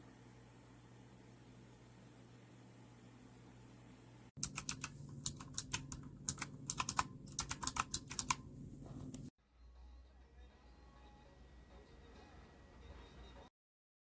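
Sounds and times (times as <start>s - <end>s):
faint low hum: 0.0s - 13.5s
keyboard key clicks: 4.4s - 8.4s.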